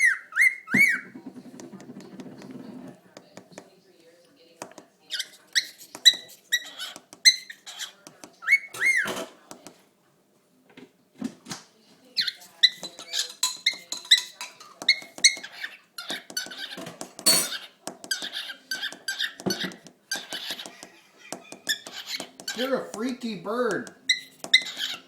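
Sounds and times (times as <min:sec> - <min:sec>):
cockatiel chirping: 0:00.0 - 0:01.2, 0:05.1 - 0:09.1, 0:12.2 - 0:22.7, 0:24.1 - 0:25.0.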